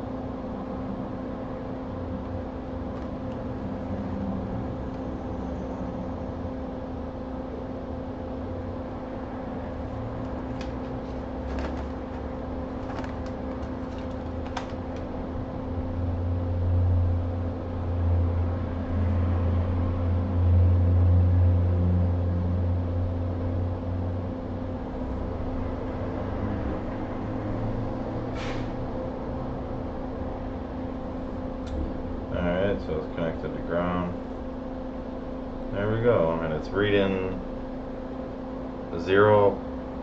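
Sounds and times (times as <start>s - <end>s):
electrical hum: 0.0s - 40.0s.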